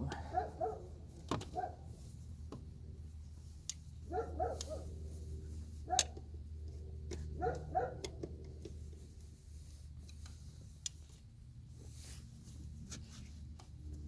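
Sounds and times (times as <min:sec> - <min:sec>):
steady low hum: 0:00.0 - 0:14.0
sharp clicks of handled parts: 0:03.6 - 0:04.8, 0:05.8 - 0:09.2, 0:10.0 - 0:11.3.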